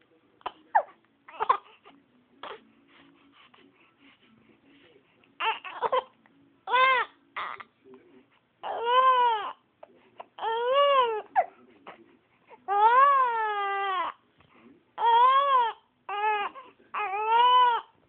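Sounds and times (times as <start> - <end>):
baby crying: 0.4 - 2.6, 5.4 - 7.7, 8.6 - 9.6, 10.4 - 11.5, 12.7 - 14.2, 15.0 - 17.9.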